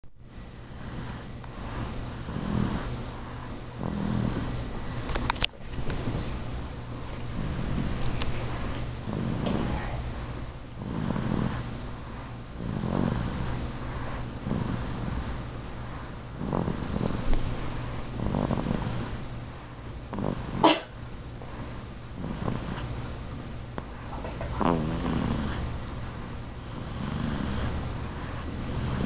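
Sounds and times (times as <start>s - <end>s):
baby snoring: 0.6s - 4.6s, 5.9s - 6.3s, 7.3s - 17.4s, 18.1s - 19.2s, 20.1s - 21.0s, 22.2s - 22.9s, 24.3s - 29.0s
baby snorting: 0.6s - 4.6s, 7.4s - 11.7s, 12.6s - 17.3s, 18.2s - 19.2s, 20.1s - 21.0s, 22.2s - 22.9s, 24.1s - 29.0s.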